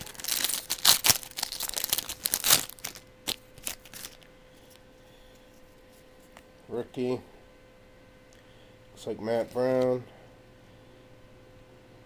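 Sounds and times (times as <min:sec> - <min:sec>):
foil wrapper tearing and crinkling: 0:00.0 - 0:04.3.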